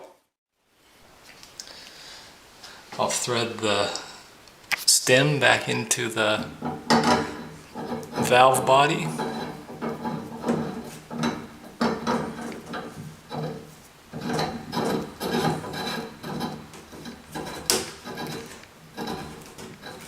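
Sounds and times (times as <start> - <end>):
metal threads scraping: 5.2 - 20.0.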